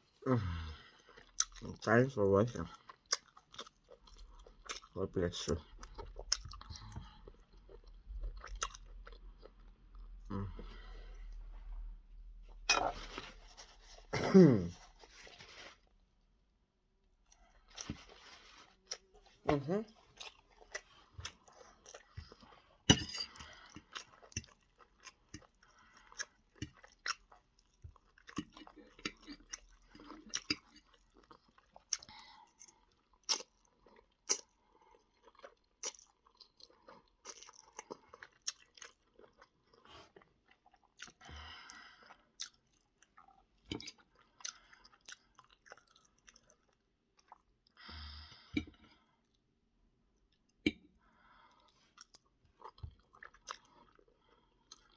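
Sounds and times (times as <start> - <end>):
chewing and mouth sounds: 1.0 - 1.9, 2.5 - 10.9, 17.3 - 47.8, 51.6 - 54.9.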